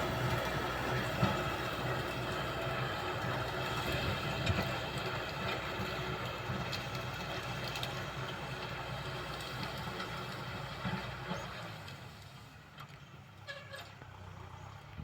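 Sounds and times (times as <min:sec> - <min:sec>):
tractor diesel engine running: 0:00.0 - 0:15.0.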